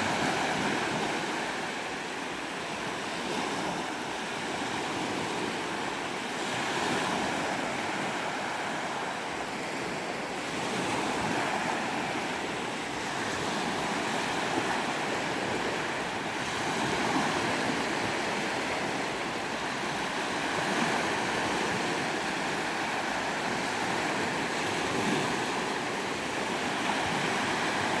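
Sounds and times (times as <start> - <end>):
waves rushing: 0.0 - 28.0.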